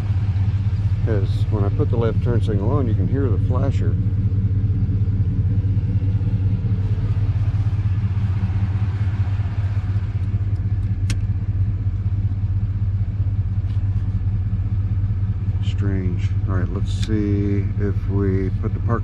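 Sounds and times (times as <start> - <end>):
motorcycle engine idling: 0.0 - 19.0
sharp click: 10.8 - 11.3.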